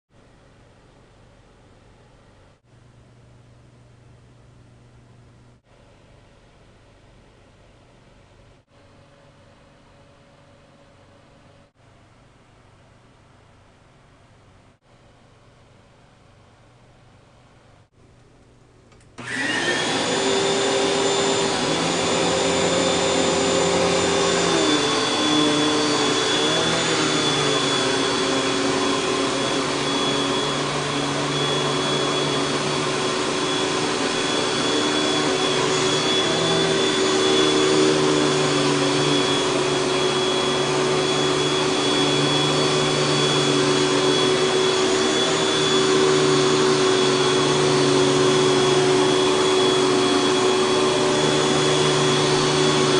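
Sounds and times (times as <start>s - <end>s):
vacuum cleaner motor running: 19.2s - 52.9s.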